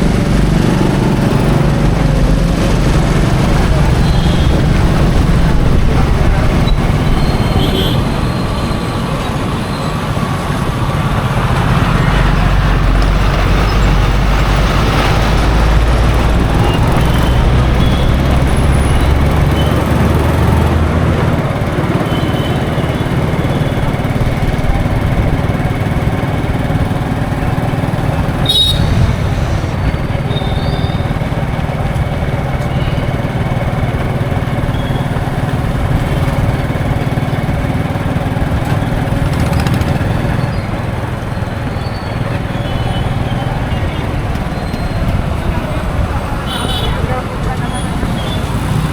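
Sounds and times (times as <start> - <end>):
bus engine running: 0.0 - 48.9
road noise: 0.0 - 48.9.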